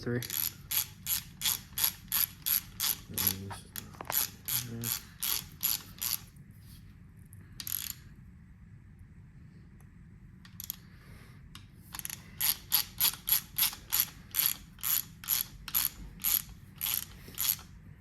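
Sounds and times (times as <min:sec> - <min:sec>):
socket ratchet clicking: 0:00.2 - 0:06.3, 0:07.6 - 0:08.0, 0:10.5 - 0:10.8, 0:11.9 - 0:17.7.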